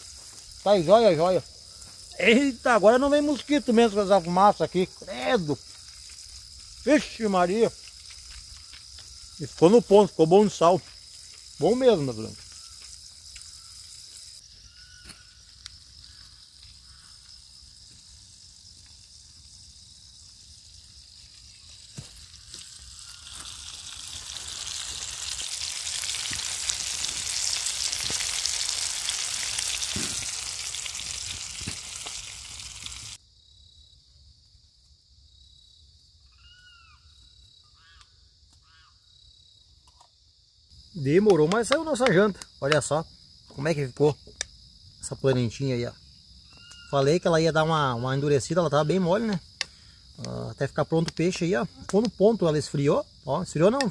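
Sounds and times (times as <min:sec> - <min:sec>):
fish sizzling in a pan: 0:00.0 - 0:33.2
crickets ringing: 0:00.0 - 0:53.9.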